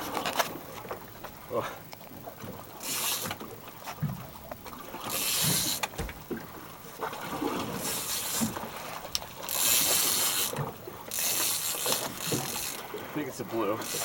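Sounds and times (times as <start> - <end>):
fishing reel drag hissing: 2.7 - 4.0, 5.0 - 5.9, 7.7 - 13.1, 13.7 - 14.0
fishing reel clicks: 2.8 - 3.5, 5.0 - 6.0, 7.8 - 13.0, 13.7 - 14.0.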